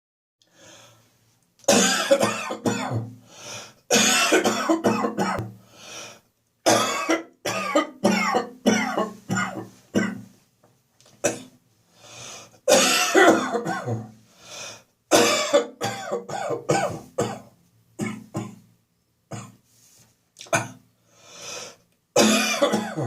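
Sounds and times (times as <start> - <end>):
person coughing hard: 1.7 - 3.2, 3.9 - 5.6, 6.7 - 10.3, 11.2 - 11.5, 12.7 - 14.2, 15.1 - 18.6, 20.4 - 20.8, 22.2 - 23.0.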